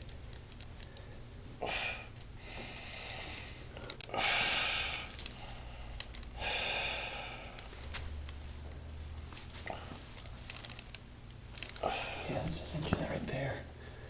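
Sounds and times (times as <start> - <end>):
person breathing noisily: 0.8 - 7.8, 11.8 - 12.4.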